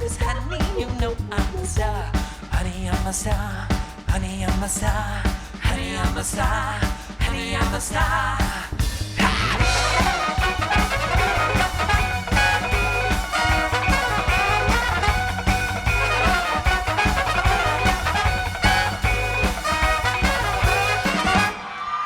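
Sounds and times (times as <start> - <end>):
rhythm section with heavy bass: 0.0 - 21.8
horn section: 9.2 - 22.0.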